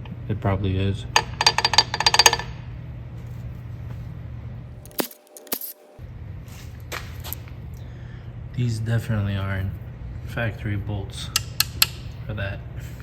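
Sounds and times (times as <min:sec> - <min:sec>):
steady low hum: 0:00.0 - 0:13.0
metal bolts clinking and rattling: 0:01.2 - 0:02.6.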